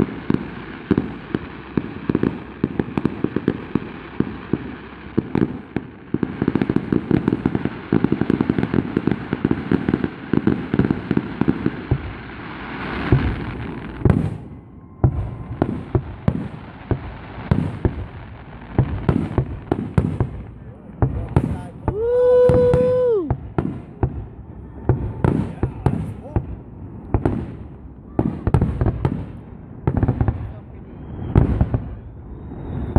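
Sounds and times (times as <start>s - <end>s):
firework hiss: 0.0s - 14.4s, 15.6s - 24.2s
firework bangs and booms: 0.0s - 32.9s
fireworks crackling: 0.0s - 32.9s.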